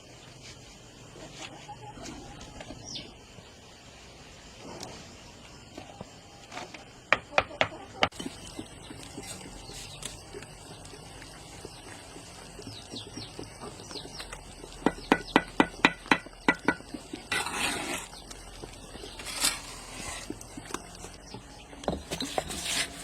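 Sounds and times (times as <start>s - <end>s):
sharp knocks: 14.8s - 17.0s
scraping noise: 16.9s - 18.3s, 19.0s - 20.6s, 22.1s - 23.0s.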